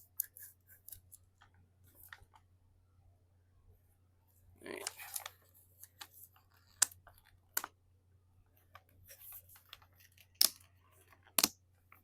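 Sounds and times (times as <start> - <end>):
sharp plastic snaps: 11.3 - 11.6.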